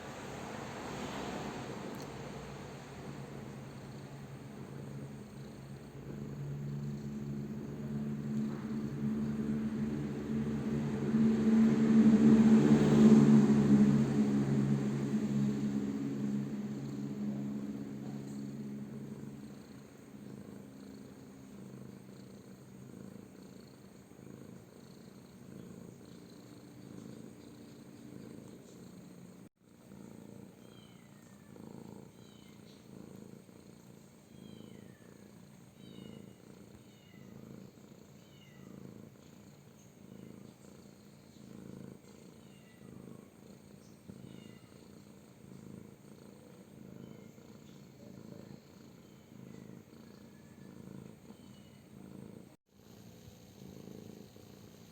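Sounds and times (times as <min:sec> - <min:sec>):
cat purring: 0:00.0 - 0:54.9
steady hum: 0:01.8 - 0:21.5.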